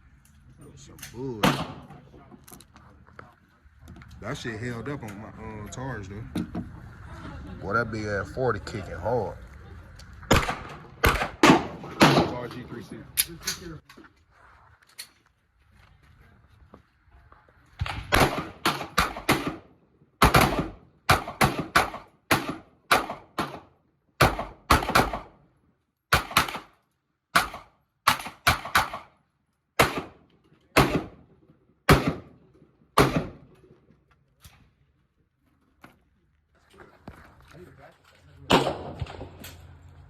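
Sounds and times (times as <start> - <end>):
handgun shots: 10.3 - 12.4, 20.2 - 23.6, 24.2 - 25.3, 26.1 - 26.8, 27.4 - 29.1, 29.8 - 30.2, 30.8 - 31.2, 31.9 - 32.3, 33.0 - 33.4.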